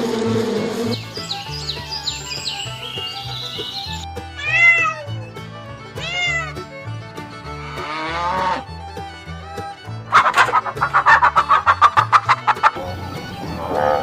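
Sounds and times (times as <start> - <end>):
background music: 0.0 - 14.0
cat meowing: 4.4 - 5.2, 6.0 - 6.6.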